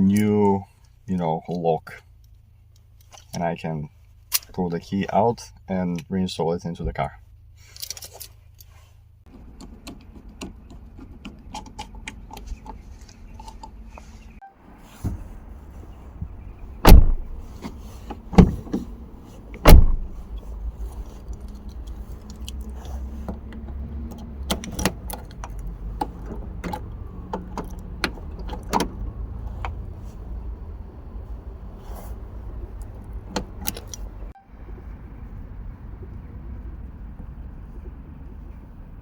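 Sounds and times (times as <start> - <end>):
car door lock clunks: 16.2 - 20.2, 23.3 - 29.8, 32.9 - 34.1.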